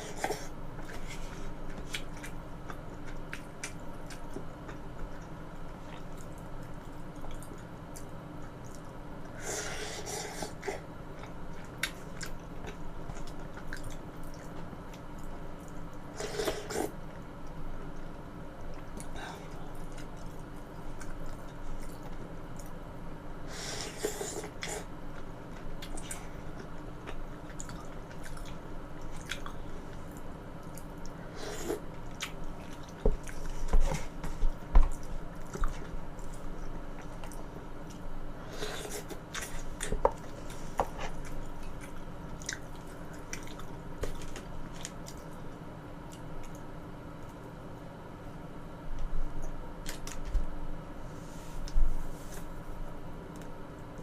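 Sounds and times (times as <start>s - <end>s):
person chewing: 0.0s - 17.0s, 25.5s - 45.3s.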